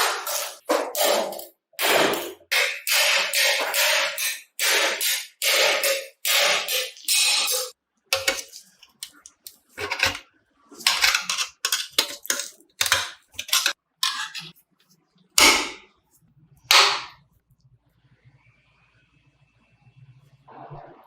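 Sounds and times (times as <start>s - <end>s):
metallic knocks and clattering tools: 0.0s - 10.2s, 10.8s - 14.5s.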